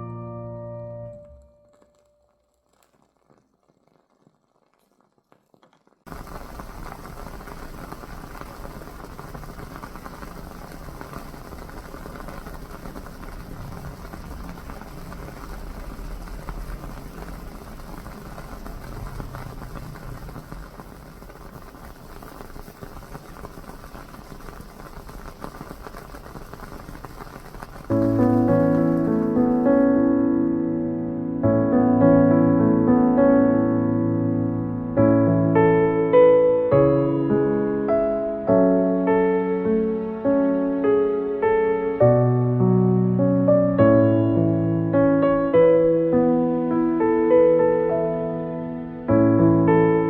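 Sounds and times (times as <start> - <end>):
wooden wick crackling: 1.2 - 30.1.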